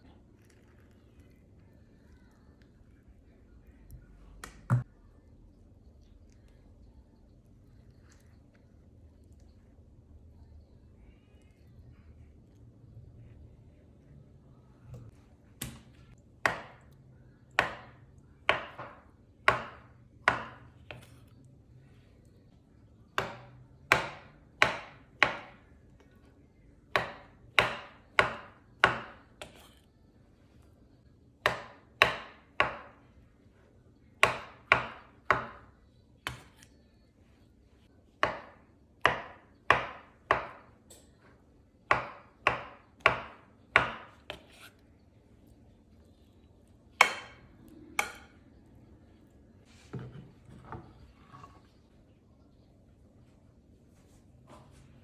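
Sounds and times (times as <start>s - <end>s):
knife chopping on cutting board: 16.4s - 16.8s, 17.6s - 21.1s, 23.2s - 25.6s, 26.9s - 29.8s, 31.4s - 33.0s, 34.2s - 35.6s, 36.3s - 36.7s, 38.2s - 40.7s, 41.9s - 44.7s, 47.0s - 47.4s, 48.0s - 48.3s.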